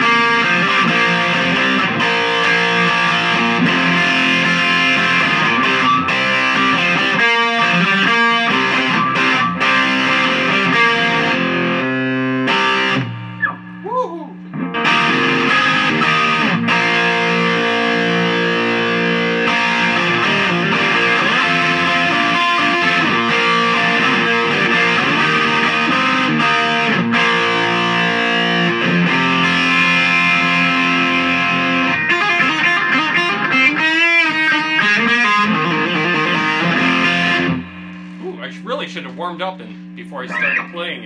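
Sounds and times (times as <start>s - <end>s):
overdriven electric guitar: 0.0s - 38.4s, 39.7s - 41.0s.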